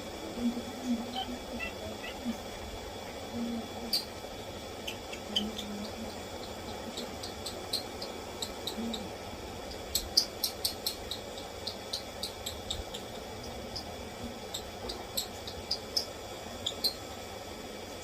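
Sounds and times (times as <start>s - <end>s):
lovebirds chirping: 1.1s - 2.3s, 4.8s - 9.1s.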